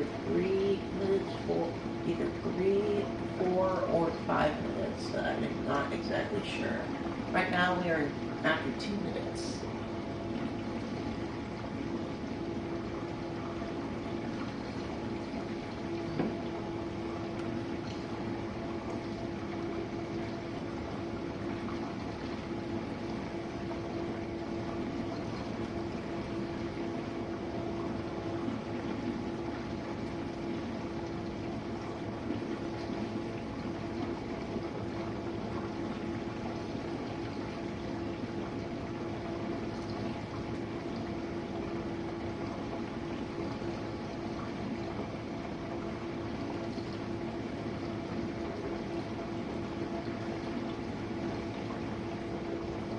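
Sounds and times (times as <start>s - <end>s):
pump motor hum: 0.0s - 52.9s.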